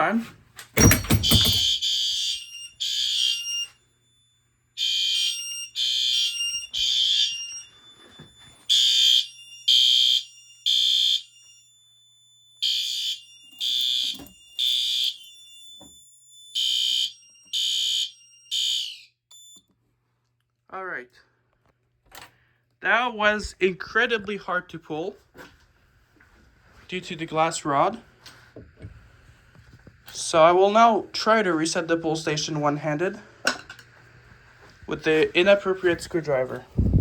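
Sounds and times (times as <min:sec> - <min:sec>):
fire alarm horn blasts: 0:00.8 - 0:19.6.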